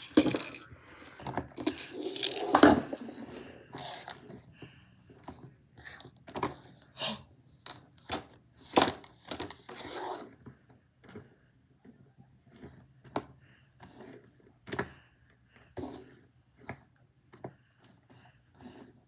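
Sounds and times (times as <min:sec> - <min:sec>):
plastic toy pieces clicking: 0:00.0 - 0:03.0.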